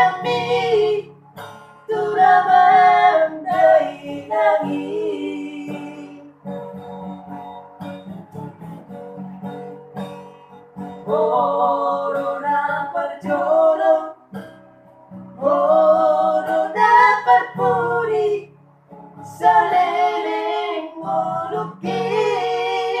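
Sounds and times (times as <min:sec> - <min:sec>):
person singing with vibrato: 0:00.0 - 0:01.1, 0:01.9 - 0:06.5, 0:11.1 - 0:14.4, 0:15.4 - 0:18.5, 0:19.3 - 0:23.0
acoustic guitar strumming: 0:00.0 - 0:23.0.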